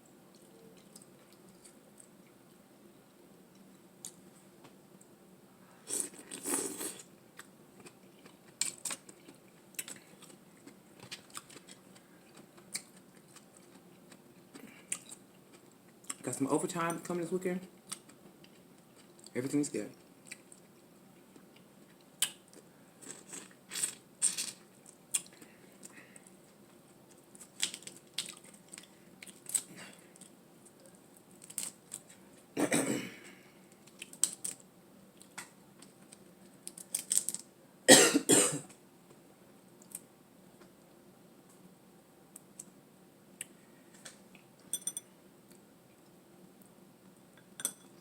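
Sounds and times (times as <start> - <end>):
chewing: 5.9 - 16.2, 27.4 - 32.1
person coughing: 32.6 - 33.4, 37.9 - 38.7.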